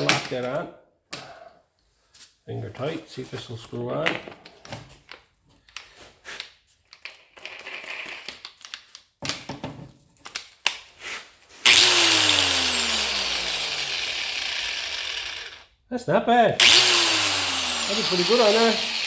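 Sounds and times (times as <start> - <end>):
angle grinder spinning down: 11.6 - 15.7, 16.6 - 19.0.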